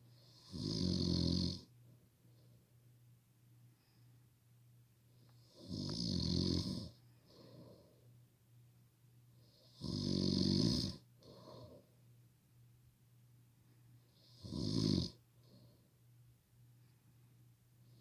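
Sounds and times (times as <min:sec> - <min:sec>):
person snoring loudly: 0:00.4 - 0:01.6, 0:14.4 - 0:15.2.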